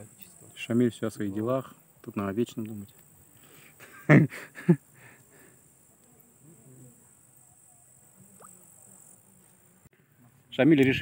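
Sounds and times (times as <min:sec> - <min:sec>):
insects chirring: 0:00.0 - 0:11.0
faint distant voices: 0:05.2 - 0:11.0.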